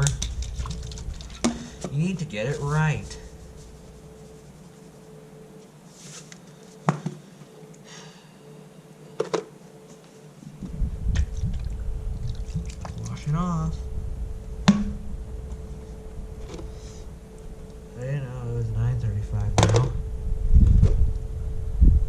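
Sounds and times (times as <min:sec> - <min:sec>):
low rumble: 0:00.0 - 0:05.5, 0:10.6 - 0:22.0
faint steady hum: 0:00.0 - 0:22.0.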